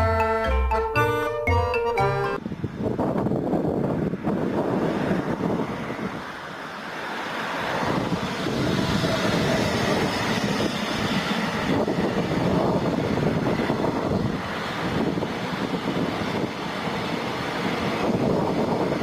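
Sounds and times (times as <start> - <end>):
freight train rumbling past: 6.9 - 19.0.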